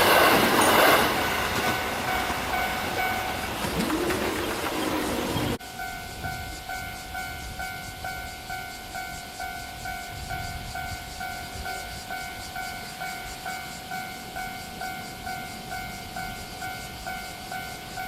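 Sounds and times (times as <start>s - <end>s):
level-crossing warning bell: 0.0s - 18.0s
train rumbling: 0.0s - 18.0s.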